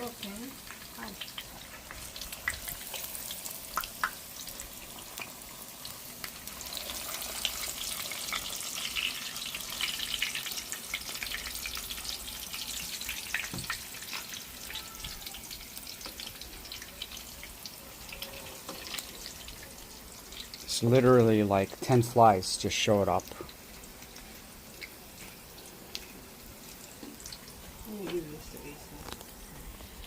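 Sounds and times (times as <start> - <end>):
oil sizzling in frying pan: 0.0 - 30.0.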